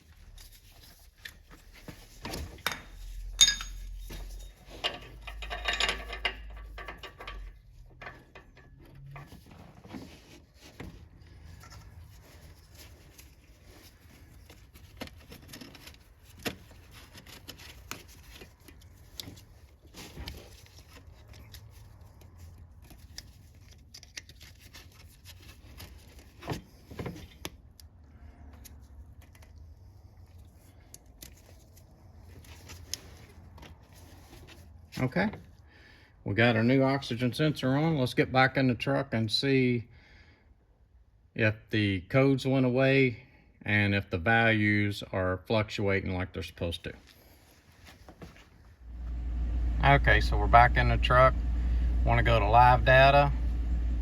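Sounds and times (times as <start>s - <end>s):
metal hand tools clinking: 3.4s - 7.5s.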